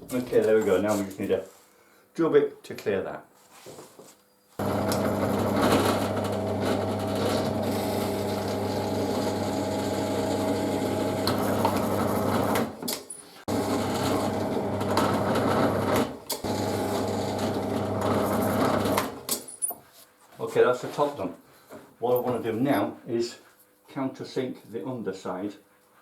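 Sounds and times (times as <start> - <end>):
electric drill boring wood: 4.6 - 12.8, 13.5 - 19.2.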